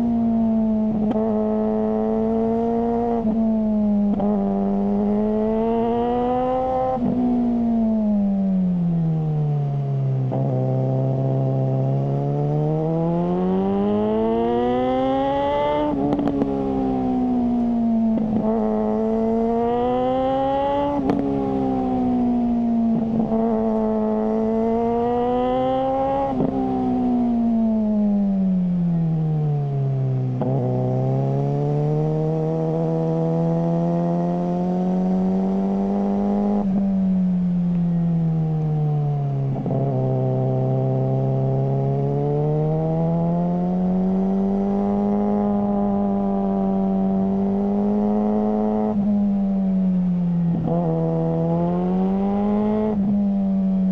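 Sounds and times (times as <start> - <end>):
motorcycle engine accelerating: 0.0 - 53.9.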